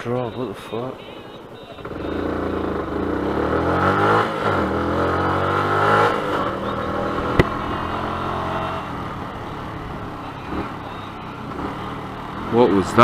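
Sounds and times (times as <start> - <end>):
motorcycle engine accelerating: 1.8 - 13.0.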